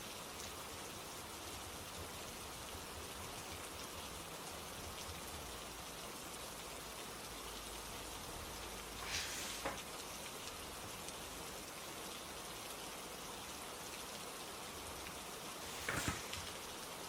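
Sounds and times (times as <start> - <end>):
steady rain falling: 0.0 - 17.0
soft rustle with a click: 9.0 - 9.9, 15.6 - 16.6.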